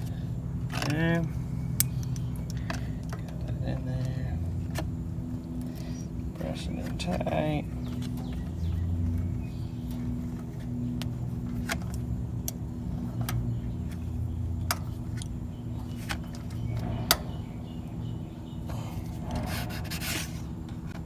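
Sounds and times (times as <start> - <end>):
sharp metal clicks and taps: 1.8 - 3.4
rubbing scrape: 19.0 - 20.6.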